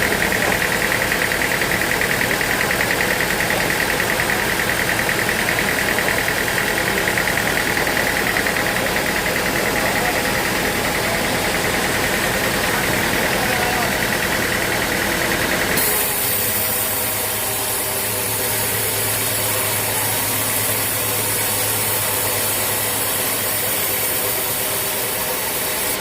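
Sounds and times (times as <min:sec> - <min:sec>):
sawmill machinery pulsing: 0:00.0 - 0:26.0.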